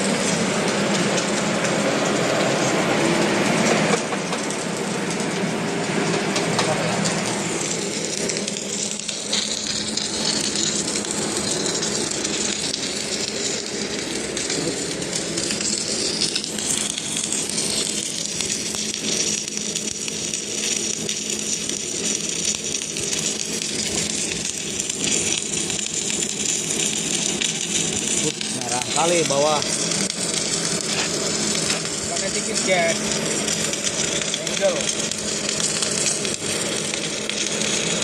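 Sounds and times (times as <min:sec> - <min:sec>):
hiss and crackle: 0:00.0 - 0:38.0
welding machine hum: 0:00.0 - 0:38.0.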